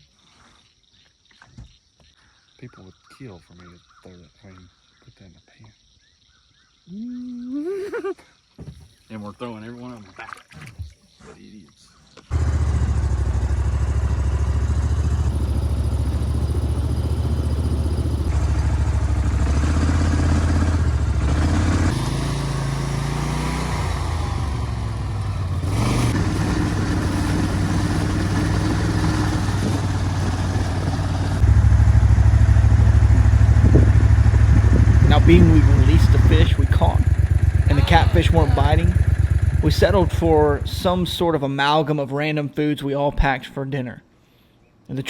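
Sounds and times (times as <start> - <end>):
engine droning hum: 12.3 - 41.6.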